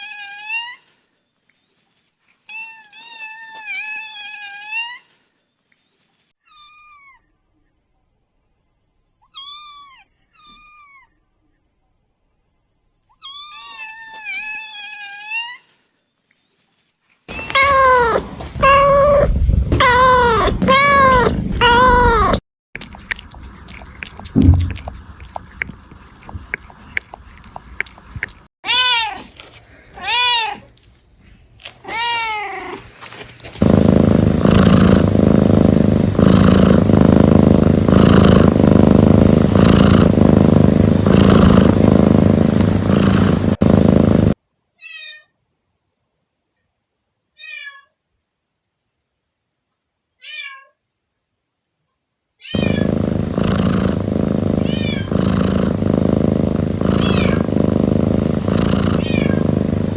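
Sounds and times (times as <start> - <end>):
kittens meowing: 17.3 - 28.9, 52.5 - 53.0, 54.6 - 55.2, 56.7 - 59.9
loud steady pulsing noise: 24.4 - 25.0.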